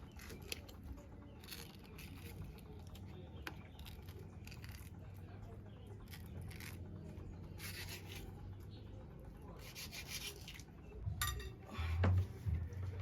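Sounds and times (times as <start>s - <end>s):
knife cutting through fruit: 7.6s - 8.3s, 9.6s - 10.6s.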